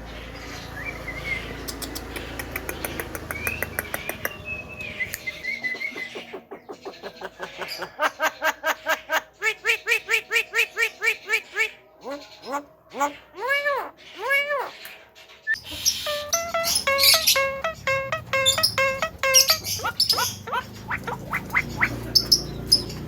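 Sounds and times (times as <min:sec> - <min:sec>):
bird fast clicking notes: 0:01.6 - 0:04.4, 0:15.6 - 0:22.4
bird warbling whistles: 0:15.5 - 0:22.4
bird repeated pitched notes: 0:15.5 - 0:22.9.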